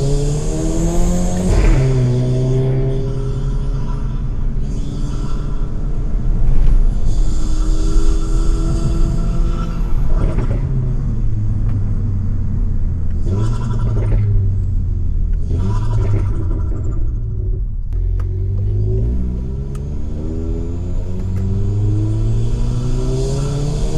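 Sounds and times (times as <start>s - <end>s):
exhaust rushing bursts: 0.0s - 11.6s, 18.9s - 23.9s
car engine revving: 0.0s - 23.9s.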